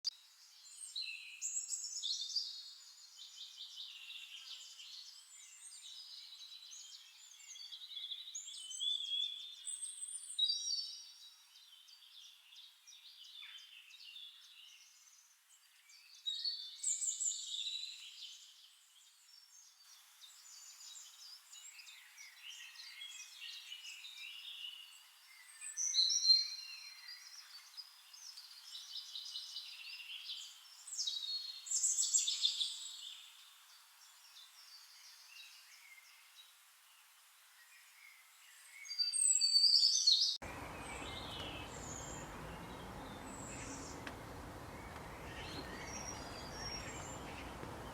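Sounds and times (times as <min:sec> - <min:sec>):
songbirds singing and calling: 0:00.0 - 0:47.9.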